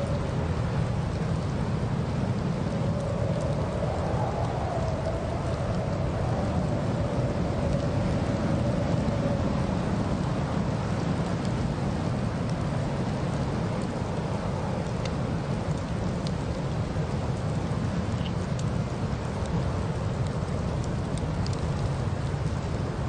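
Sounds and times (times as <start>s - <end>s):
wind: 0.0s - 23.0s
faint howling tone: 2.4s - 10.5s.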